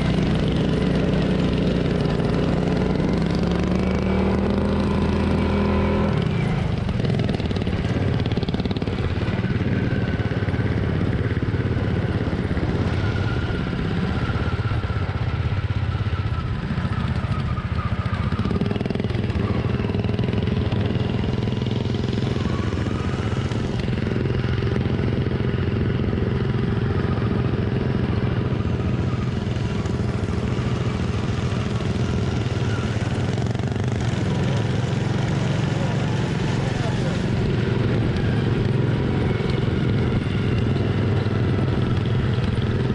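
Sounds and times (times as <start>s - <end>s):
lawn tractor engines running hard: 0.0s - 42.9s.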